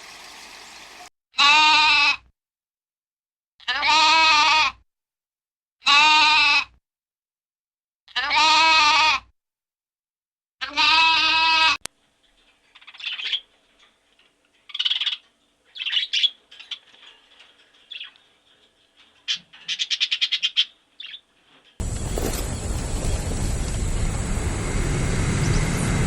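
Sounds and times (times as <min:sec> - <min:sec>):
sheep or goat bleating: 0:01.4 - 0:02.3, 0:03.6 - 0:04.8, 0:05.8 - 0:06.8, 0:08.1 - 0:09.3, 0:10.6 - 0:11.8.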